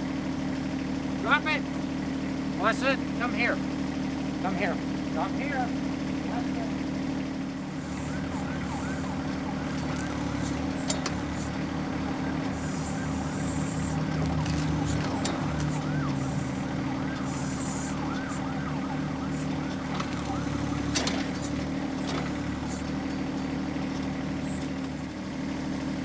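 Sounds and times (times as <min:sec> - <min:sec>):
tractor diesel engine running: 0:00.0 - 0:26.0
high warbling tone: 0:07.6 - 0:23.3
sharp clicks: 0:08.1 - 0:11.7, 0:12.4 - 0:25.0.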